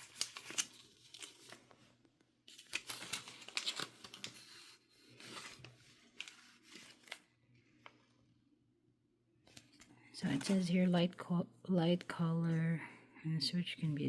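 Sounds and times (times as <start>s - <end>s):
paper rustling and crinkling: 0.0s - 8.1s, 9.5s - 10.9s.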